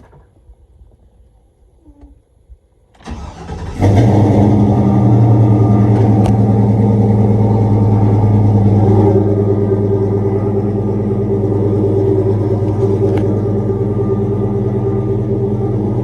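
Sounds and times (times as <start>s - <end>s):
car engine starter cranking: 2.9s - 6.9s
car engine idling: 3.0s - 16.0s.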